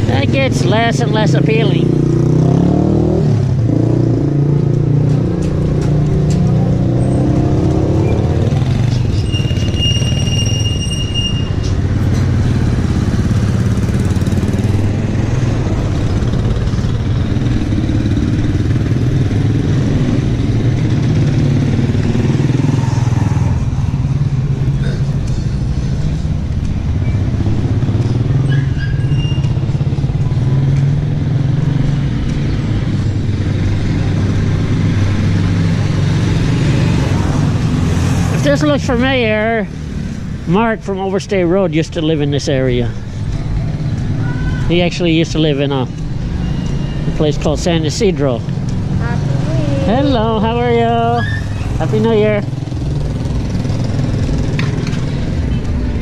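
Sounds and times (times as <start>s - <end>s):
road rumble: 0.0s - 56.0s
vehicle engine running: 44.8s - 56.0s.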